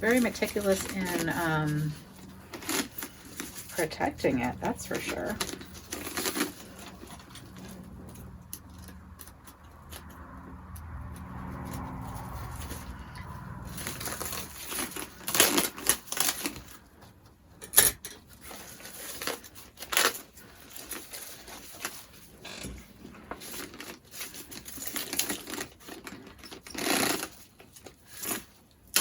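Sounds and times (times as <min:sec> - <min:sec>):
metal chain strap clinking: 0:17.6 - 0:29.0.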